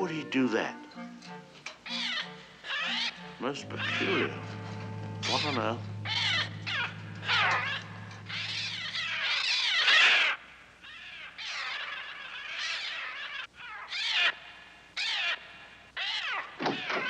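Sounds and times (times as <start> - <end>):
flock of birds shrieking: 1.9 - 10.3, 10.9 - 17.0.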